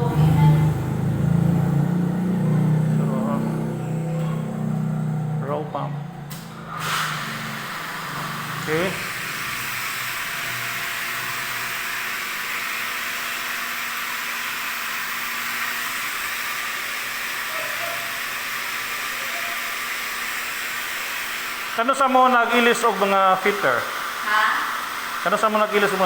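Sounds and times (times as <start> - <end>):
water pump running: 0.0 - 26.0
water hissing through pipes: 6.5 - 26.0.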